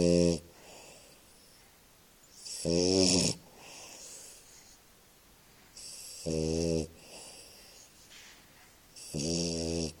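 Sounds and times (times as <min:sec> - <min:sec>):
dog snoring: 0:00.0 - 0:01.6, 0:02.3 - 0:04.8, 0:05.8 - 0:07.9, 0:08.9 - 0:10.0.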